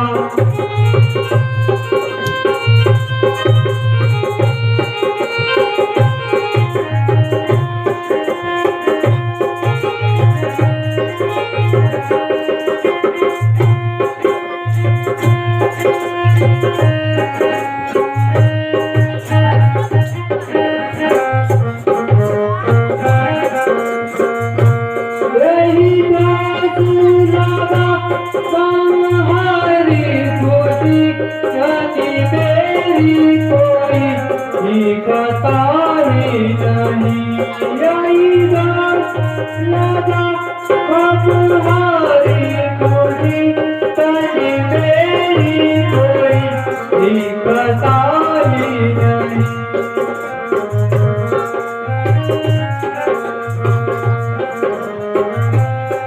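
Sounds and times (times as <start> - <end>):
melody instrument held notes: 0.0 - 35.0
drum beat: 0.0 - 50.1
low wavering melody line: 18.8 - 24.8.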